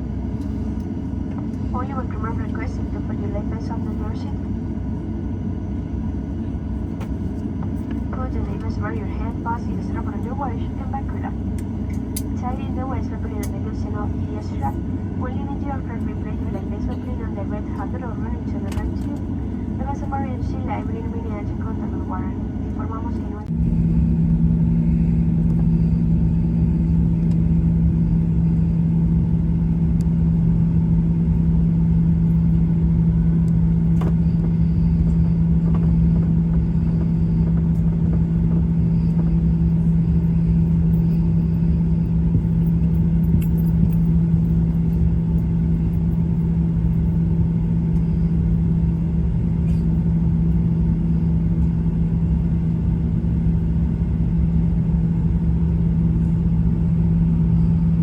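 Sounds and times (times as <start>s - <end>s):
jet engine drone in cabin: 0.0s - 58.0s
airframe rumble: 23.4s - 53.4s.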